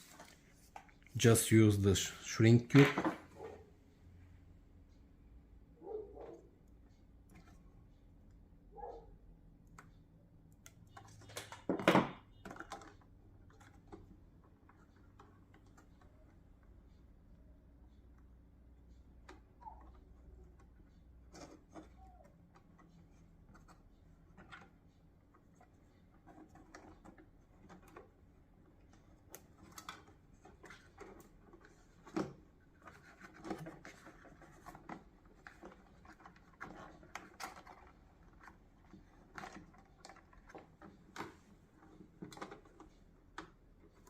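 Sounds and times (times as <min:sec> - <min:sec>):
plastic and wire rubbing: 0:19.6 - 0:44.0.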